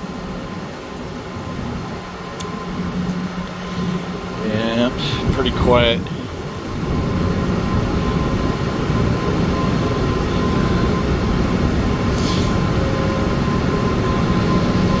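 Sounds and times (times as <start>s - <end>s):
low machinery rumble: 0.0s - 15.0s
thin whine: 0.0s - 15.0s.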